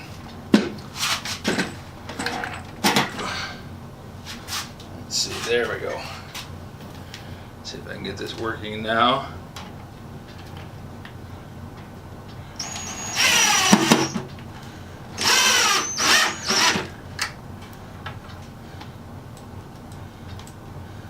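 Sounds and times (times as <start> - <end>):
power drill motor whine: 12.6 - 14.3, 15.2 - 17.0.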